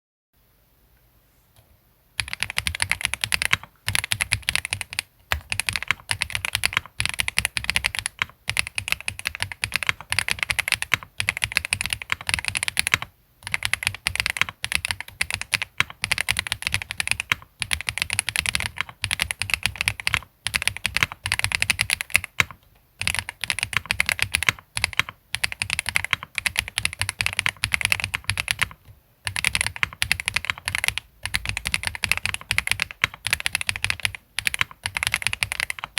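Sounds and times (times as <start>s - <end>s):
fast typing on mechanical keyboard: 2.2s - 35.9s.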